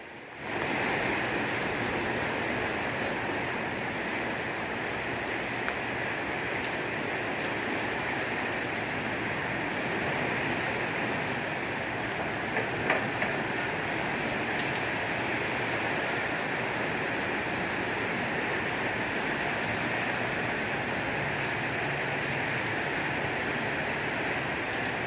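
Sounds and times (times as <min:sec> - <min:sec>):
heavy rain: 0:00.0 - 0:25.0
wind: 0:00.0 - 0:25.0.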